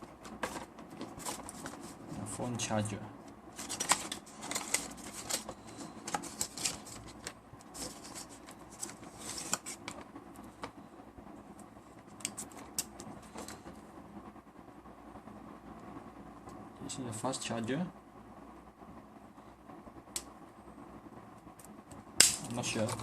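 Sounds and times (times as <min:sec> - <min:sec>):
packaging rustling and crinkling: 0:00.0 - 0:02.2, 0:03.5 - 0:10.0.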